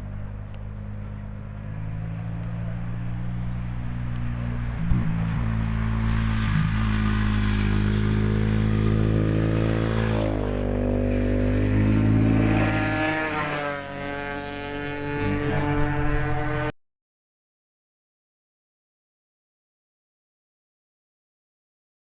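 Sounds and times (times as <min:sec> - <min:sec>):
motorcycle engine running: 0:00.0 - 0:16.8.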